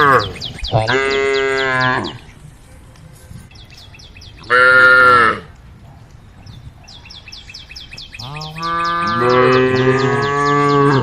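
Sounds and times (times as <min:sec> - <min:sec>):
cow mooing: 0:00.0 - 0:02.2, 0:04.5 - 0:05.5, 0:08.2 - 0:11.0
bird chirping: 0:00.0 - 0:04.9, 0:05.7 - 0:11.0.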